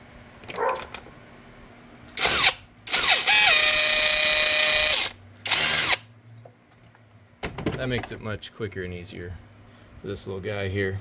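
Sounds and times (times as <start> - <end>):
handheld power tool spinning: 2.2 - 6.1.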